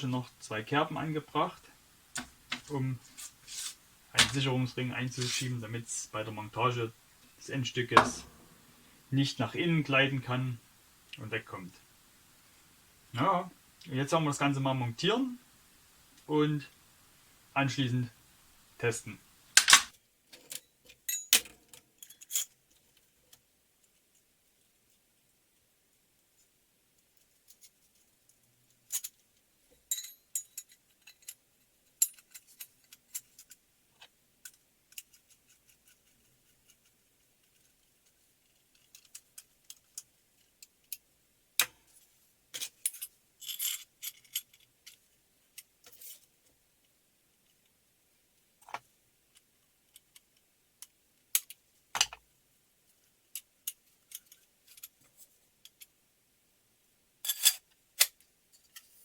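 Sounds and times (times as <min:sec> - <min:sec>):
metal parts clinking and knocking: 0:08.0 - 0:08.6, 0:42.6 - 0:45.0.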